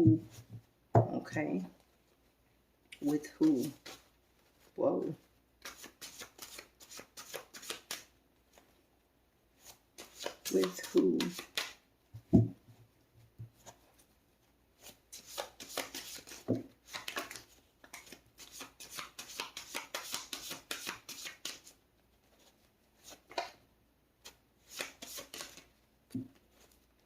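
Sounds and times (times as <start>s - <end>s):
cards being shuffled: 3.0s - 4.6s, 5.6s - 8.6s, 9.6s - 11.8s, 14.8s - 23.6s, 24.2s - 25.7s.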